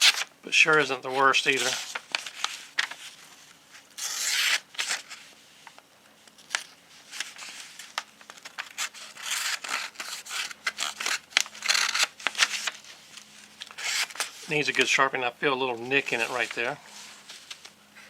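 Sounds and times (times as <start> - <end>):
paper rustling and clicks: 0.0 - 3.1, 4.2 - 15.0, 16.0 - 17.8
knife slicing paper: 4.0 - 5.2, 8.7 - 12.7, 13.7 - 14.6.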